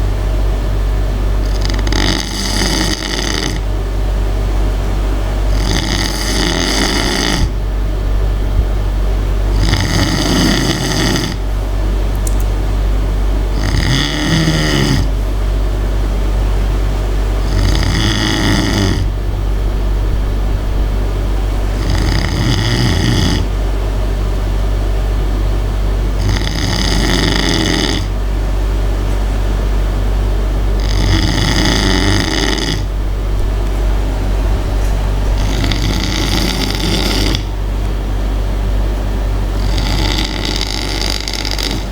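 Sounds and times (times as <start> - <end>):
steady low hum: 0.0 - 41.9
person snoring: 1.4 - 3.7, 5.5 - 7.6, 9.5 - 11.4, 13.5 - 15.1, 17.4 - 19.1, 21.7 - 23.5, 26.2 - 28.1, 30.8 - 32.9, 35.1 - 37.5, 39.6 - 41.9.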